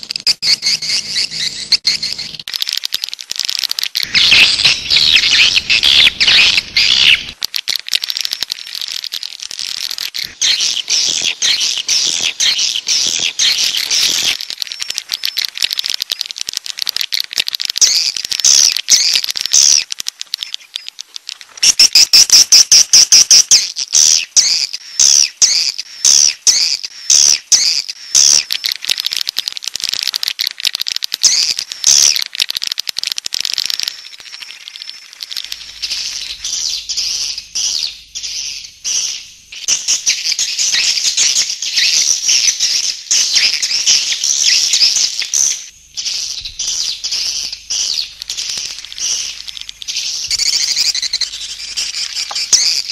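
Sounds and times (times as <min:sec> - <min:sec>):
swiftlet chirping and twittering: 0:00.0 - 0:52.9.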